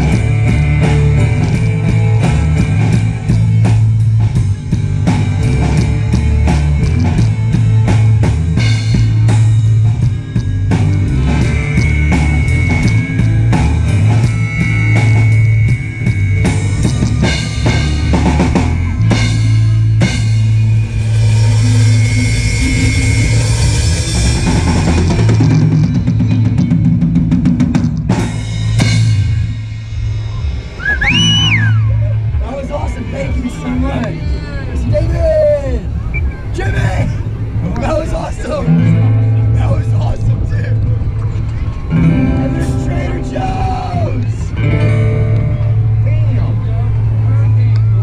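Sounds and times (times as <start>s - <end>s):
electric guitar: 0.0s - 32.4s, 37.2s - 48.0s
drum kit beat: 0.0s - 36.4s
bass line: 0.0s - 48.0s
cymbals: 1.1s - 27.1s.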